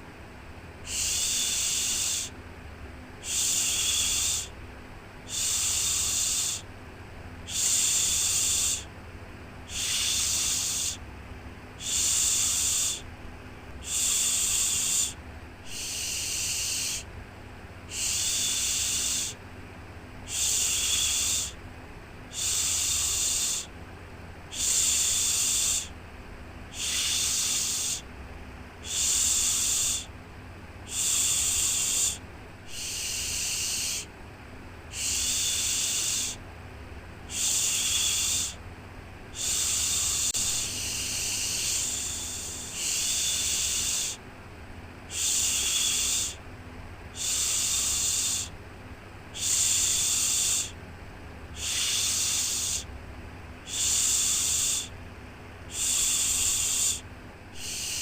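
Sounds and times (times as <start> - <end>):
faint low hum: 0.0 - 58.0
person shushing: 0.9 - 2.3, 3.2 - 4.6, 7.5 - 8.9, 9.7 - 11.0, 13.8 - 17.1, 24.5 - 25.9, 26.7 - 28.1, 28.8 - 30.1, 30.9 - 34.1, 34.9 - 36.4, 37.3 - 38.6, 39.4 - 44.2, 45.1 - 46.4, 47.2 - 48.5, 49.4 - 50.8, 51.6 - 52.9, 53.7 - 55.0, 55.7 - 57.0, 57.6 - 58.0.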